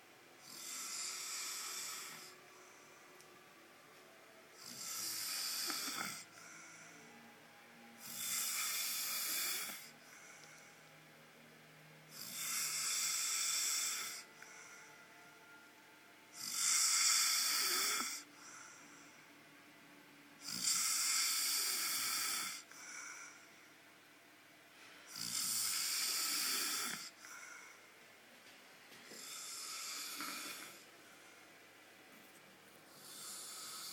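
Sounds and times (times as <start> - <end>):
man snoring loudly: 0.4 - 2.4, 4.6 - 6.4, 8.0 - 9.9, 12.1 - 14.3, 16.3 - 18.3, 20.4 - 22.7, 25.1 - 27.2, 29.2 - 30.8, 32.9 - 33.9
soft breath out: 6.3 - 7.2, 9.6 - 11.0, 14.2 - 15.3, 18.3 - 19.4, 27.1 - 28.0.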